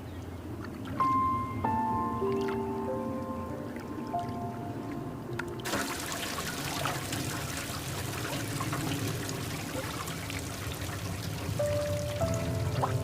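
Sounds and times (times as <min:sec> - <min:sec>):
water trickling and splashing: 0:00.0 - 0:01.4, 0:02.2 - 0:13.0
soft music: 0:00.4 - 0:05.8, 0:11.2 - 0:13.0.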